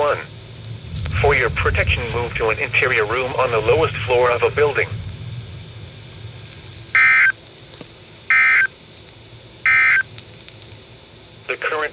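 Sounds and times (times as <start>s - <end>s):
digital data tone bursts: 6.9s - 7.4s, 8.3s - 8.8s, 9.6s - 10.1s.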